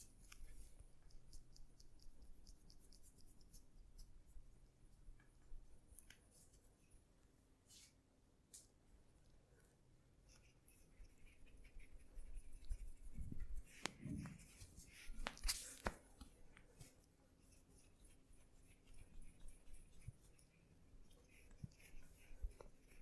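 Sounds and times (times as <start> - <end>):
hands rubbing on skin: 11.1 - 16.2.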